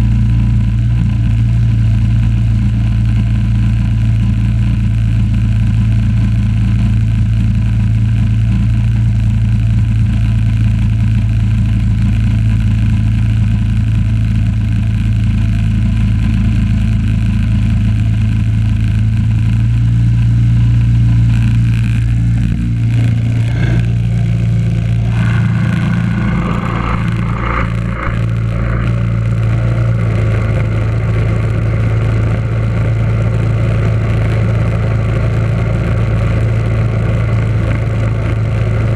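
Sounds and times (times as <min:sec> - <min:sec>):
garden tractor engine running: 0:18.3 - 0:36.0.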